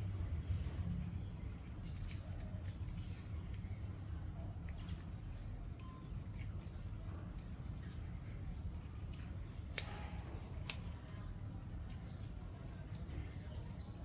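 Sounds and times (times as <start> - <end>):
cats eating: 0.0 - 14.0
faint clicks: 9.1 - 11.2.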